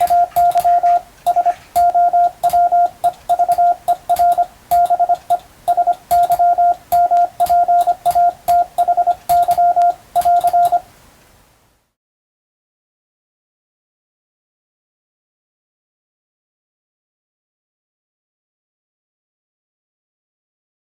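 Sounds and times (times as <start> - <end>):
key clicks: 0.0 - 10.8
morse code beep tone: 0.0 - 10.9.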